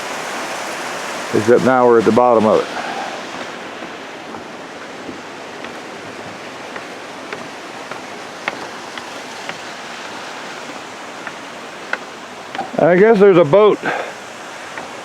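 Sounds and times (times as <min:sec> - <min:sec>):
rushing river water: 0:00.0 - 0:15.0.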